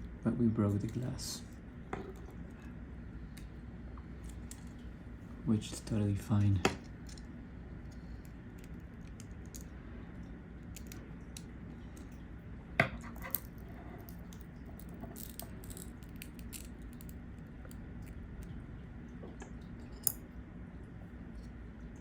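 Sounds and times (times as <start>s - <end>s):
small tools clicking and scraping: 13.0s - 17.2s.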